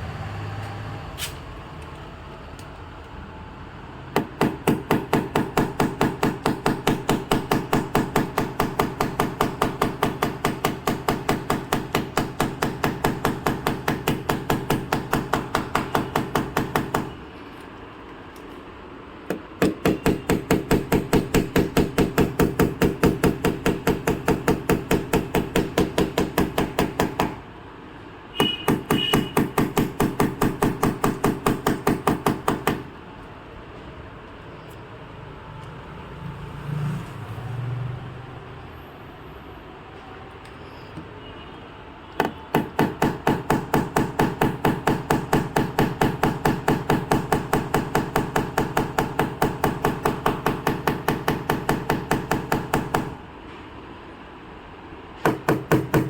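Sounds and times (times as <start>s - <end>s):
hammer tapping metal car panel: 4.1s - 17.2s, 19.2s - 27.5s, 28.3s - 33.0s, 42.2s - 53.2s, 55.2s - 56.0s.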